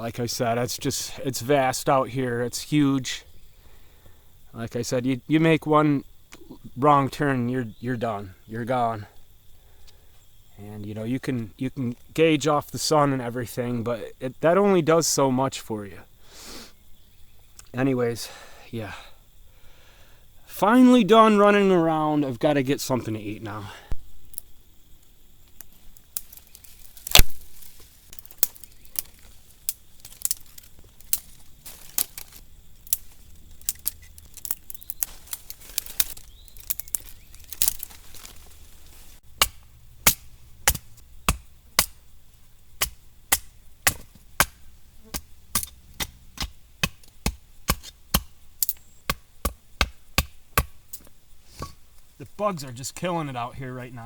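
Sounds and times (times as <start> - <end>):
firewood being chopped: 26.2 - 38.5, 39.2 - 42.0, 42.8 - 51.8.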